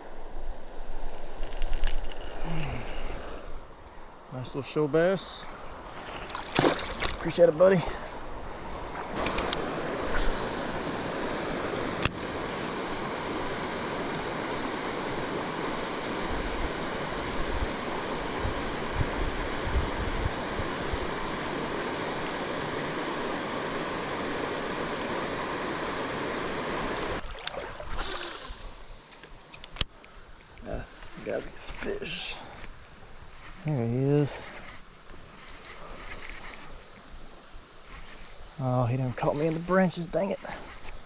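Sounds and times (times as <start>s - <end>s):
river water rushing: 2.2s - 29.5s.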